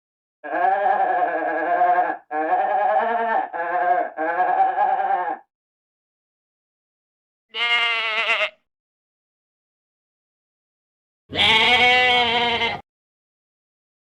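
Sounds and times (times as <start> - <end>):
goat bleating: 0.4 - 5.5, 7.5 - 8.6, 11.3 - 12.8.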